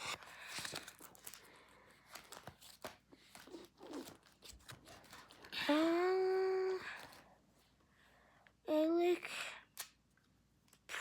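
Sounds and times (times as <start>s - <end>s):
packaging crinkling: 0.0s - 5.5s.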